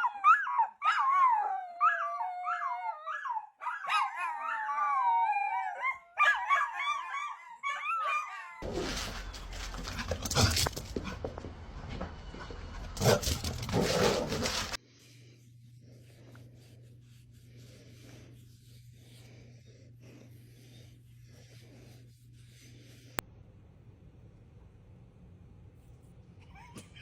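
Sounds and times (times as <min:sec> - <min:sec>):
dog whining and howling: 0:00.0 - 0:10.1
rough rustling: 0:08.6 - 0:11.3, 0:12.7 - 0:14.8.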